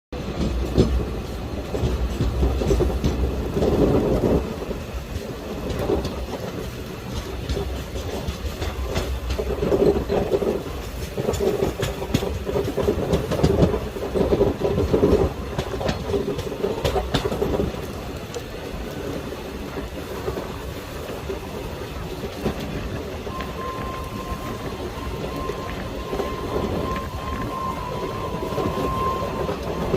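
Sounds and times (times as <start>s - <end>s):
train wheels clattering on rails: 0.2s - 29.9s.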